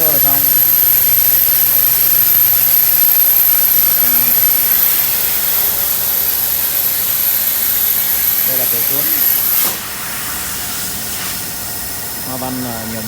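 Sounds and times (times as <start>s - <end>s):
high constant whine: 0.0s - 9.6s
cutting machine hissing: 0.0s - 10.0s.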